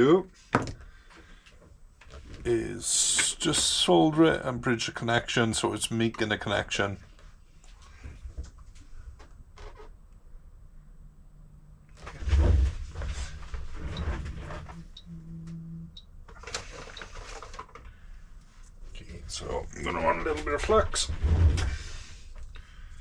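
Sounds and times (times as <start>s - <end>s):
knocking scraping and clatter: 20.3s - 21.9s.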